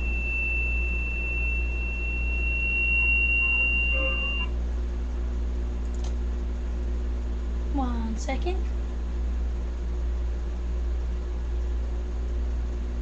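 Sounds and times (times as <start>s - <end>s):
high-pitched electronic beep: 0.0s - 4.5s
low steady hum: 0.0s - 13.0s.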